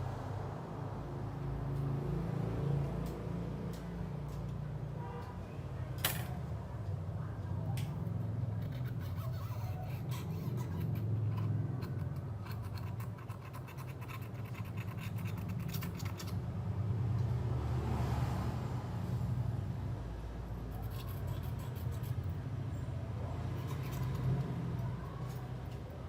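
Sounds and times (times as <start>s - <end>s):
hand tools scratching and clicking: 8.5s - 16.5s, 20.7s - 22.3s, 23.4s - 26.0s.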